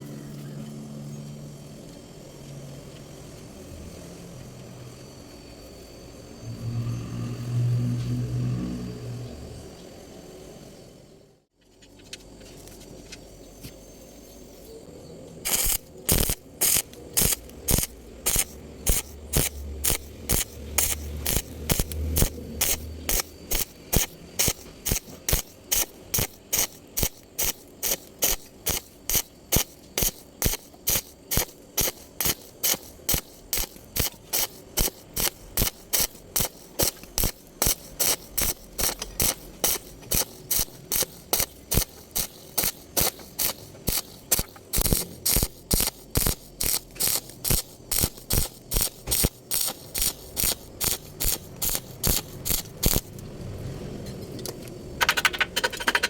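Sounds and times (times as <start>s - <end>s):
welding arc bursts: 15.5s - 53.2s.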